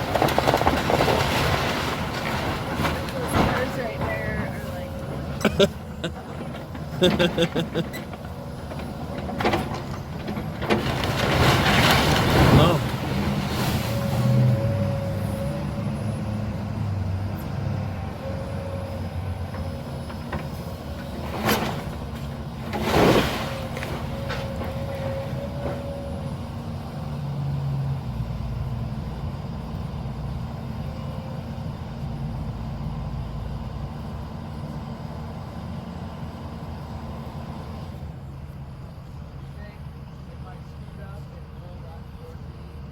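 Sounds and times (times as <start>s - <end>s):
demolition crashes: 0.0s - 15.0s, 20.1s - 26.4s
heavy machine engine running: 0.0s - 42.9s.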